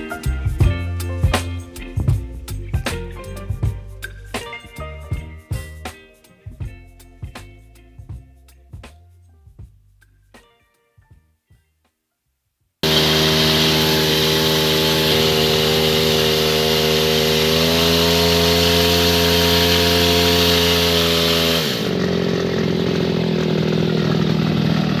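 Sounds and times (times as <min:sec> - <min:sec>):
small engine running: 0:12.8 - 0:25.0.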